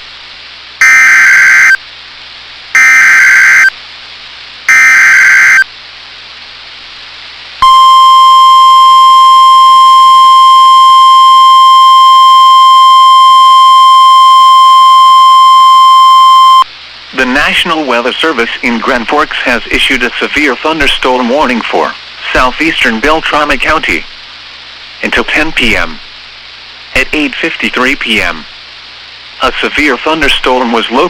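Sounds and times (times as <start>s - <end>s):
raspy digital data bursts: 0.8s - 1.8s, 2.8s - 3.7s, 4.7s - 5.6s
steady single-pitch alarm tone: 0.8s - 1.8s, 2.7s - 3.8s, 4.7s - 5.7s, 7.6s - 16.7s.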